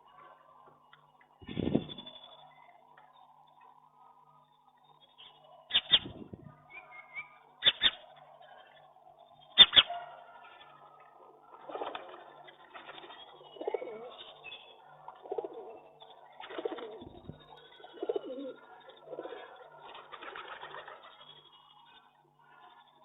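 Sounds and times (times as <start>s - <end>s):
pigeon cooing: 11.5s - 14.4s, 15.0s - 21.3s.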